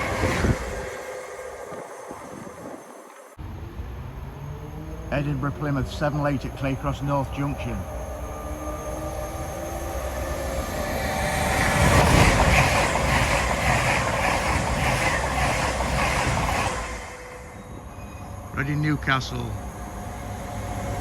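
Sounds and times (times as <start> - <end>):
diesel train passing at speed: 0.0 - 21.0
wheels beating on rails: 7.7 - 21.0.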